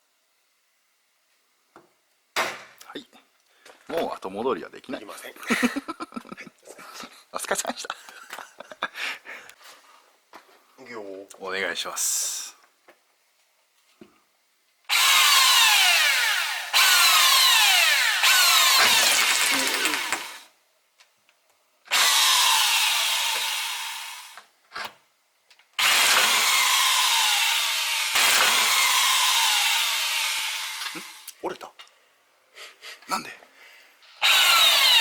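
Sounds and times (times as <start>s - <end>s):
power drill boring into sheet metal: 14.9s - 20.5s, 21.9s - 24.4s, 25.8s - 31.2s, 34.2s - 35.0s.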